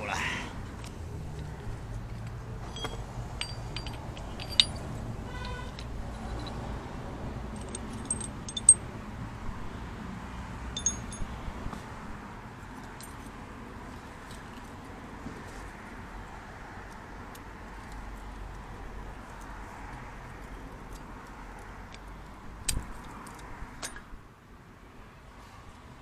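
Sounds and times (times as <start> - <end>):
metal tools clinking: 2.6 - 6.6, 7.6 - 8.8, 10.8 - 11.4.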